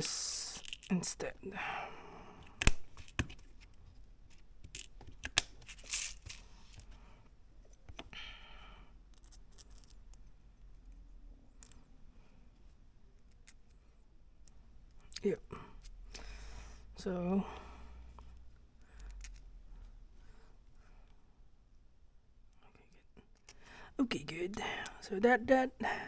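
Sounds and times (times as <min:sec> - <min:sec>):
plastic parts clicking and tapping: 0:02.4 - 0:03.6, 0:04.6 - 0:06.9.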